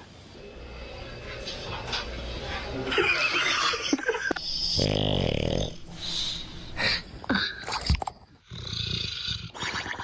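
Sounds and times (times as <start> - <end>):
dog snoring: 4.4 - 6.4, 8.4 - 9.6.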